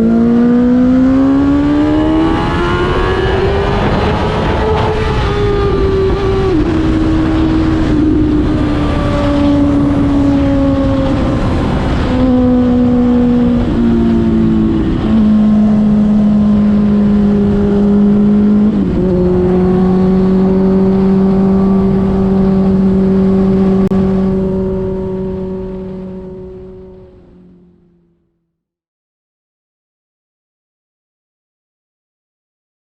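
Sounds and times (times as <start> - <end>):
motorcycle engine cruising: 0.0 - 28.3.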